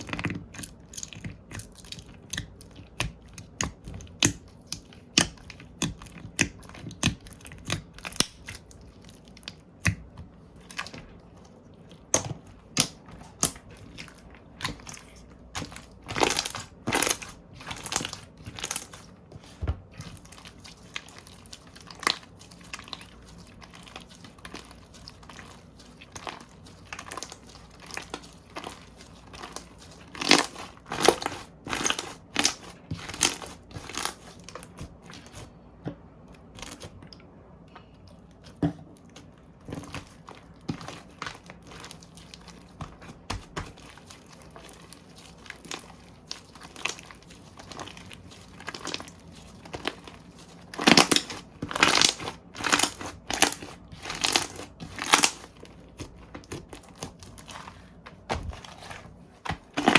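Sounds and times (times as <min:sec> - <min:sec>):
slime squished by hand: 0:00.0 - 0:35.6, 0:37.8 - 0:59.9.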